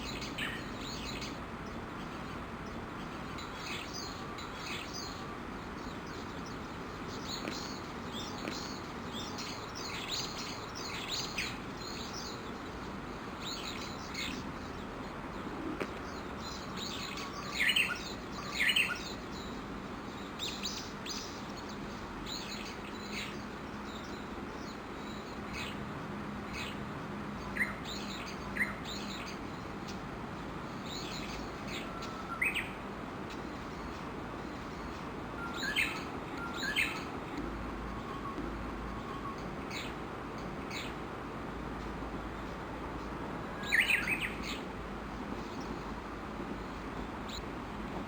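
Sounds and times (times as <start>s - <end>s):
birds chirping: 0.0s - 25.8s, 30.8s - 41.0s, 43.6s - 45.9s.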